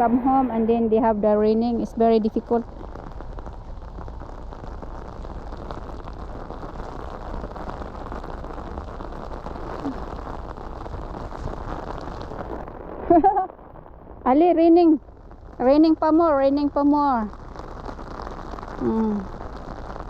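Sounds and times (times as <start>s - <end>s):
heavy rain falling: 0.0s - 20.0s.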